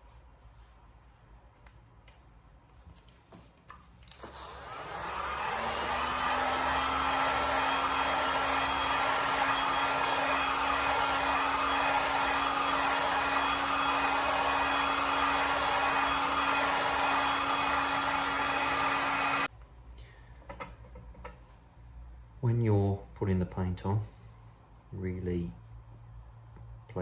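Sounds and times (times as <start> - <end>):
faint handling sounds: 0.0 - 4.1
hot-air dryer blowing: 4.2 - 19.5.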